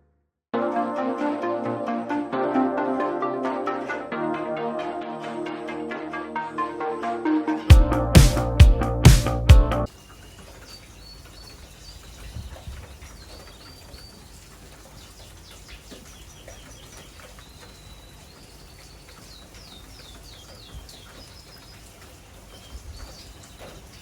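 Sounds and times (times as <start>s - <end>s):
small birds chirping: 9.9s - 24.0s.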